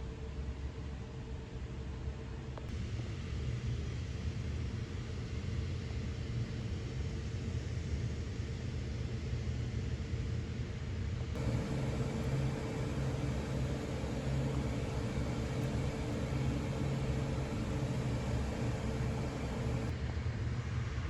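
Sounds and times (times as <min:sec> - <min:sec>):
faint steady hum: 0:11.2 - 0:20.2
low mechanical rumble: 0:11.4 - 0:20.0.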